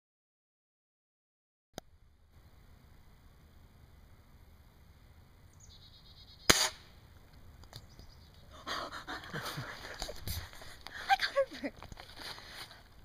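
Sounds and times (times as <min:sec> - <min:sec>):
pellet gun shot: 0:06.5 - 0:07.0.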